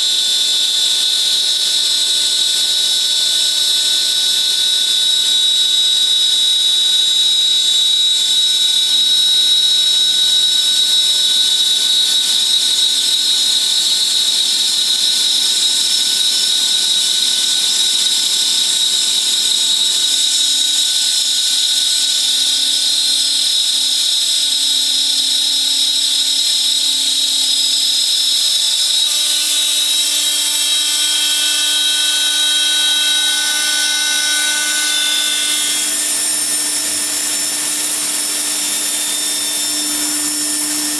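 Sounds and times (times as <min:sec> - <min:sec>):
machine spindle whine: 0:00.0 - 0:40.9.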